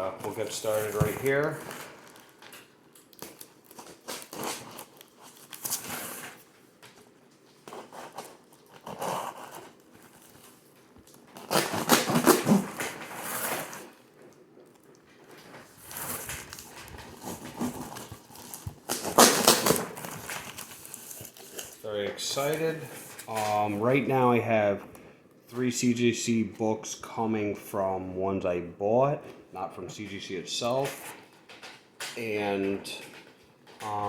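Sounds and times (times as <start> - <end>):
packaging rustling and crinkling: 0.0 - 24.0, 30.6 - 32.2, 32.9 - 34.0
packaging tearing: 0.2 - 23.7.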